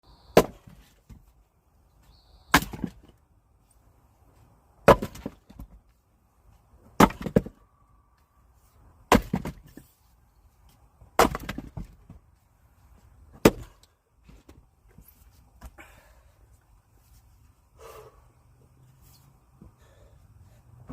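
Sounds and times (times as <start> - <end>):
axe chopping firewood: 0.3 - 1.2, 2.5 - 3.2, 4.8 - 5.8, 6.9 - 7.6, 9.1 - 9.8, 11.1 - 12.2, 13.3 - 13.9.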